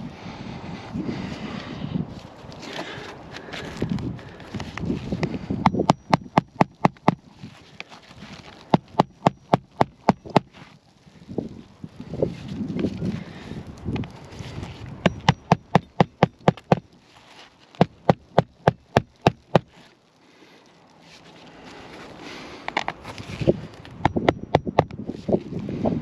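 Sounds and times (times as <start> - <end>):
hammer striking roofing nails: 5.6 - 7.3, 8.7 - 10.5, 15.0 - 16.9, 17.8 - 19.7, 24.0 - 25.0.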